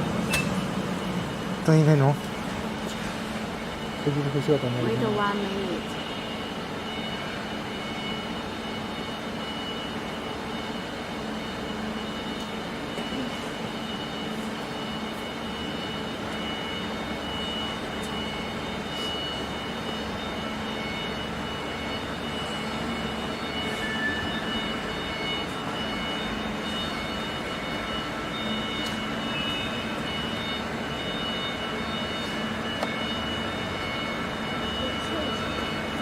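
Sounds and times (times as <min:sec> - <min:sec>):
high-pitched whines: 0:00.0 - 0:36.0.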